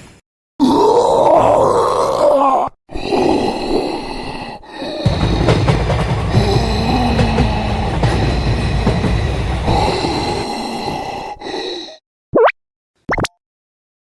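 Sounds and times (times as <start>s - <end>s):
train rumbling past: 5.0s - 11.1s.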